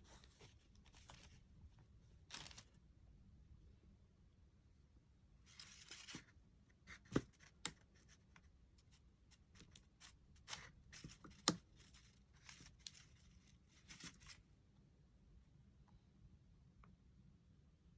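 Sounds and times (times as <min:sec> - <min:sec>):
paper rustling: 0:00.0 - 0:01.4, 0:02.2 - 0:02.8, 0:05.5 - 0:06.3, 0:09.4 - 0:14.4.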